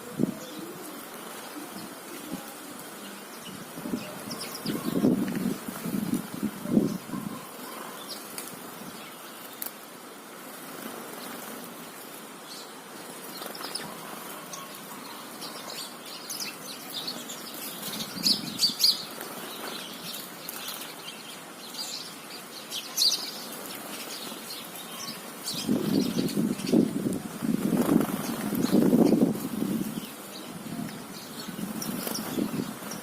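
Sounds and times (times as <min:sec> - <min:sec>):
sparrows chirping: 0:00.0 - 0:33.0
low rustle or flutter: 0:25.7 - 0:30.1.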